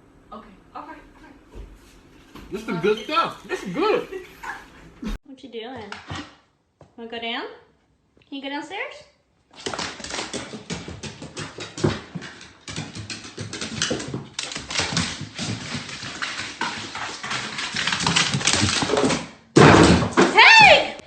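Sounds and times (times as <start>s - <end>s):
dog claws clicking on hard floor: 9.5s - 20.3s.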